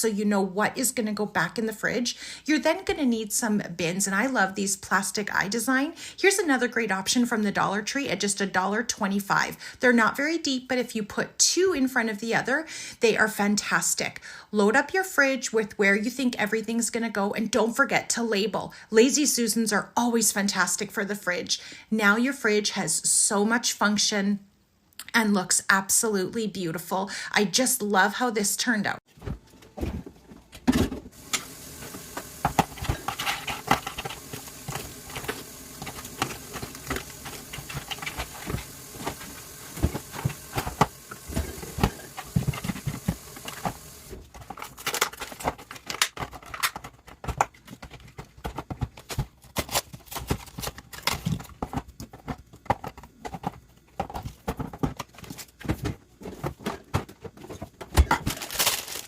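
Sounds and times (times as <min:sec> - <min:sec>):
objects clicking and rattling: 0:29.5 - 0:59.0
faint steady hiss: 0:29.7 - 0:44.3.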